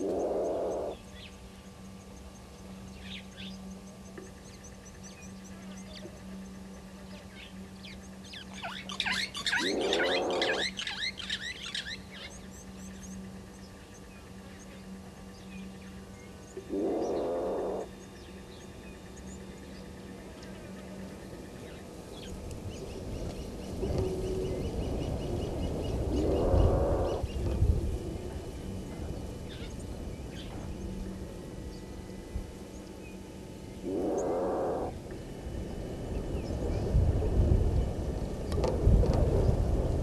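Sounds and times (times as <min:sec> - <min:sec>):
loud low animal calls: 0:00.0 - 0:01.0, 0:09.5 - 0:10.8, 0:16.7 - 0:17.9, 0:26.0 - 0:27.3, 0:33.8 - 0:35.0
small birds chirping: 0:00.0 - 0:27.6, 0:33.8 - 0:35.0.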